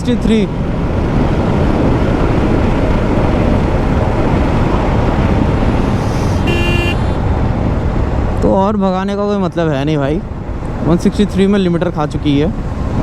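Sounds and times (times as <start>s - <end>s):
motorcycle engine at full throttle: 0.6s - 8.2s
short beep: 6.4s - 7.2s.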